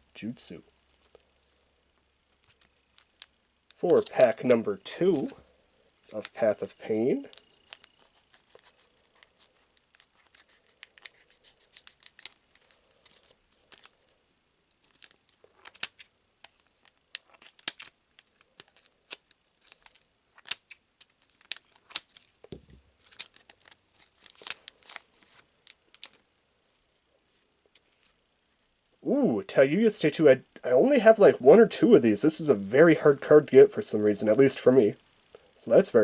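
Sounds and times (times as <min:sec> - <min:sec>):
foil wrapper crinkling: 0:02.4 - 0:26.3.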